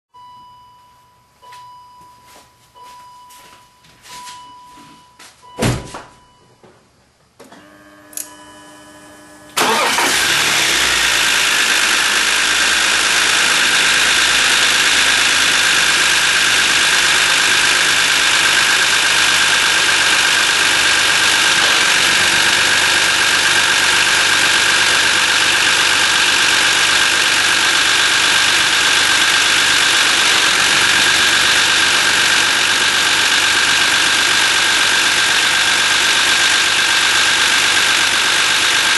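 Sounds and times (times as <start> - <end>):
thump: 5.6 - 6.8
car engine starting and idling: 7.4 - 38.9.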